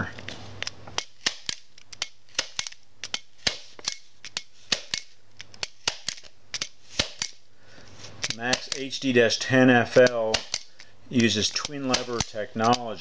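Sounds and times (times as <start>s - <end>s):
stapler clicking through paper: 1.0s - 7.4s, 10.0s - 12.9s.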